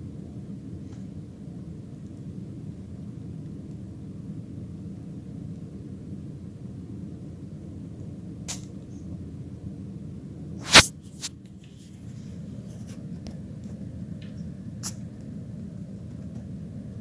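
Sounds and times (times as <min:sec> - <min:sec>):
steady low hum: 0:00.0 - 0:17.0
guinea pig sneezing: 0:08.5 - 0:08.8, 0:10.6 - 0:11.4, 0:14.8 - 0:15.0.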